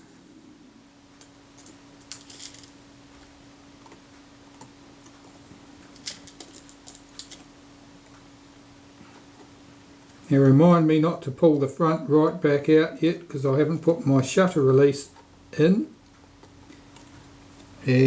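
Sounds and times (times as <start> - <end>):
faint steady hum: 0.0 - 18.0
small metal parts clicking: 1.2 - 2.8, 5.9 - 7.5.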